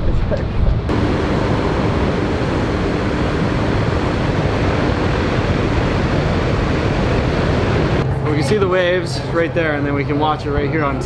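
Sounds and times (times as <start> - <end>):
wind rushing: 0.7 - 8.1
heavy surf breaking: 0.9 - 10.1
faint steady hum: 0.9 - 11.0.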